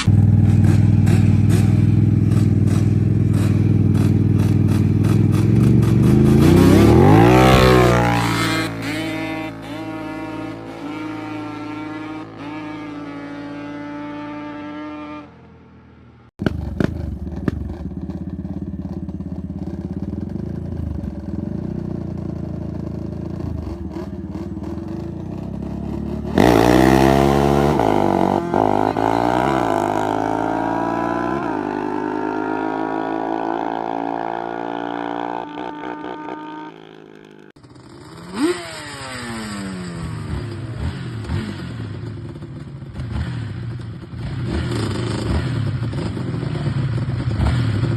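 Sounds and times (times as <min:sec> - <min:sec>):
two-stroke engine revving: 0:00.0 - 0:15.3, 0:19.1 - 0:47.9.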